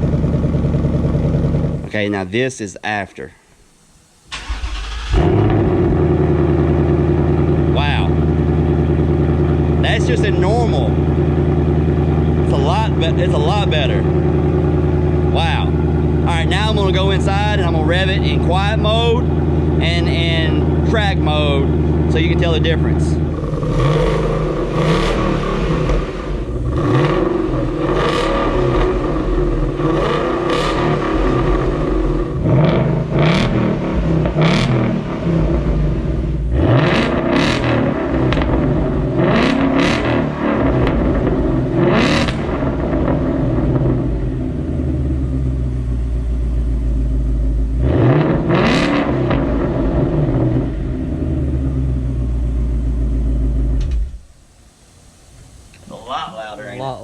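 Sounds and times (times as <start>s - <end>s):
car engine revving and idling: 0.0s - 2.0s, 4.2s - 54.3s.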